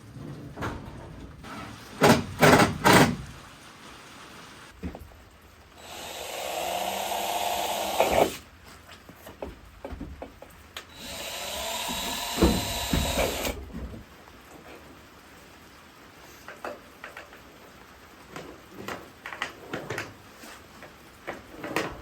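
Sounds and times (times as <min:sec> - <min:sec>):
power drill driving screws into metal: 0:05.8 - 0:08.4, 0:10.9 - 0:13.6.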